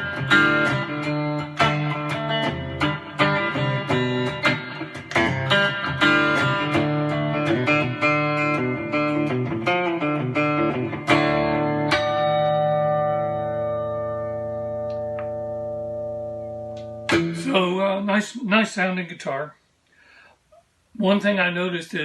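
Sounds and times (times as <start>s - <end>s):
electric guitar notes and chords: 0.0s - 17.6s.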